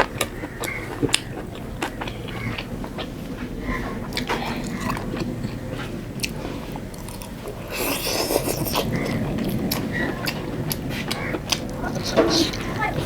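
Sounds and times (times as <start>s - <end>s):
crunchy rustling: 0.0s - 13.0s
person chewing food: 0.0s - 13.0s.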